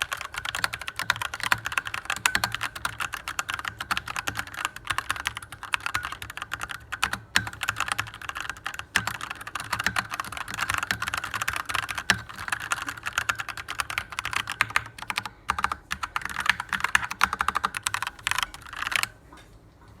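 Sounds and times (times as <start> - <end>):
mechanical keyboard typing: 0.0 - 19.2.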